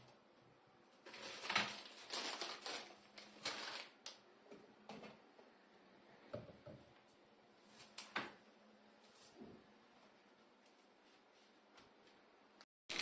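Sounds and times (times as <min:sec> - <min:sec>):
rustling crinkling handling: 0:01.0 - 0:04.2.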